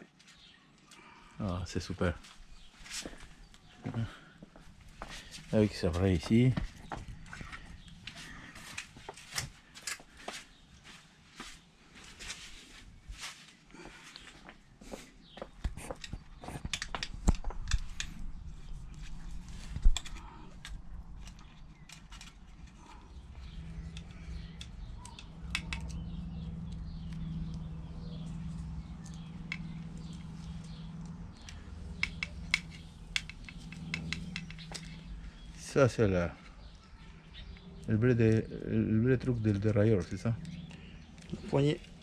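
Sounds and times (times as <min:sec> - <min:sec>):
low steady hum: 0:00.0 - 0:42.0
clicks and knocks of bicycle work: 0:31.4 - 0:35.0.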